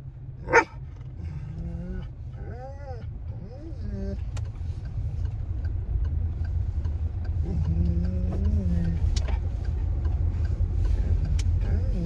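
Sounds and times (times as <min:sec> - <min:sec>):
road and engine rumble: 0:00.0 - 0:12.0
faint regular ticking: 0:04.2 - 0:12.0.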